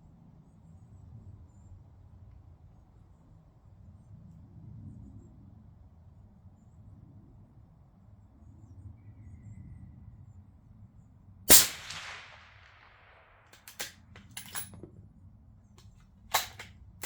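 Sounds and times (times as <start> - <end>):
rifle shot: 11.5 - 14.7, 16.3 - 16.7
sharp mechanical clicks: 13.6 - 14.7, 16.3 - 16.7.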